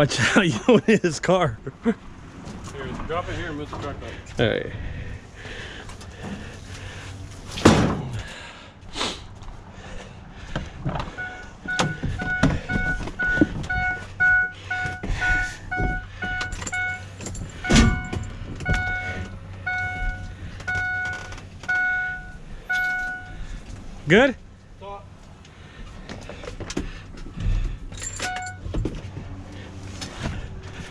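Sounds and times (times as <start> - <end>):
truck reversing alarm beeping: 11.0 - 23.6, 27.9 - 28.7
loud thumps: 17.7 - 19.3.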